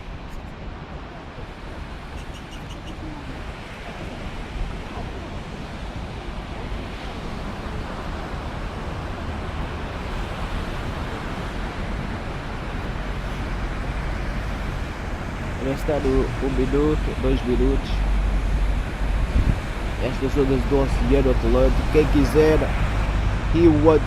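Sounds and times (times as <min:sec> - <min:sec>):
ocean surf washing on shore: 0:00.0 - 0:24.0
wind rumbling on microphone: 0:00.0 - 0:24.0.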